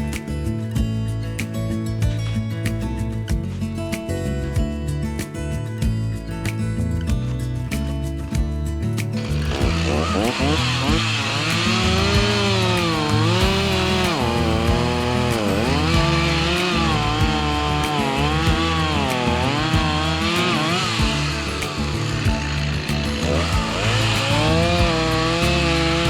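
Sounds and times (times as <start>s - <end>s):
chainsaw cutting wood: 9.2s - 26.0s.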